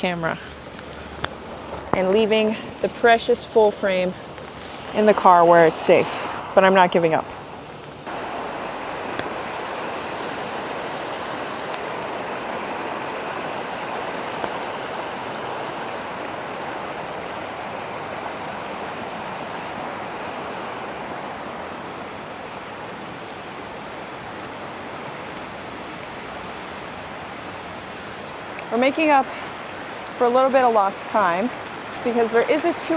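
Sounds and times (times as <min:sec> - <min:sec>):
stream rushing: 0:00.0 - 0:32.9.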